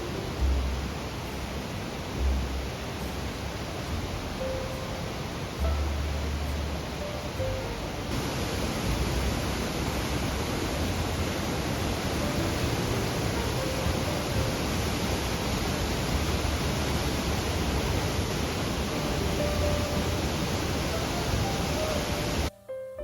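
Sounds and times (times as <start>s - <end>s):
waterfall roaring: 0.0s - 22.5s.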